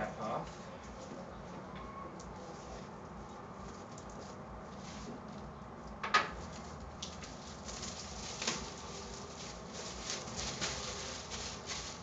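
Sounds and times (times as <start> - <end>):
plastic shrink wrap crinkling: 6.5 - 12.0.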